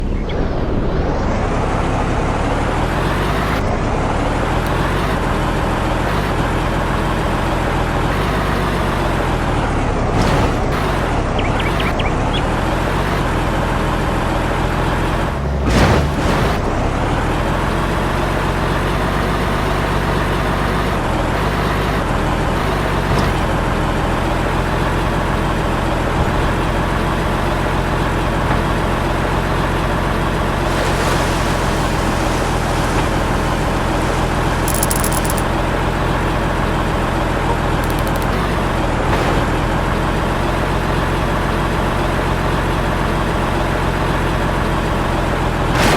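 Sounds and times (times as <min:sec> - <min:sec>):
engine running steadily: 0:00.0 - 0:45.9.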